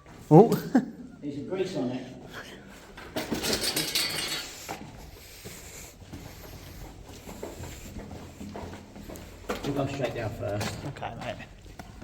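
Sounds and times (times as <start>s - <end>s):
metallic clattering and scraping: 3.0s - 5.4s.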